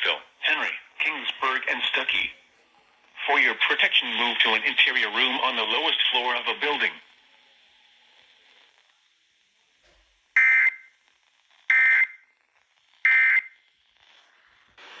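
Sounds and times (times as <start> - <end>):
shrill electronic data bursts: 13.0 - 13.7.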